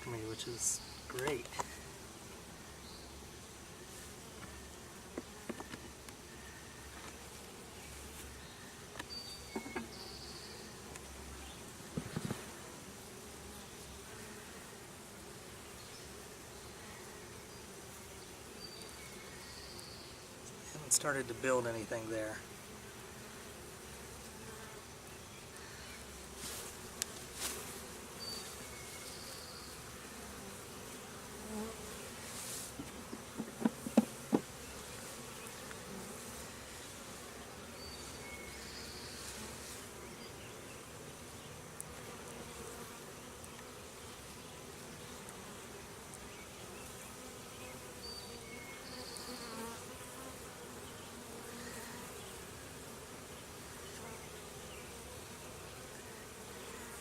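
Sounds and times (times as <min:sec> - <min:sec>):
honeybees buzzing: 0:00.0 - 0:57.0
sharp knocks: 0:33.1 - 0:34.5.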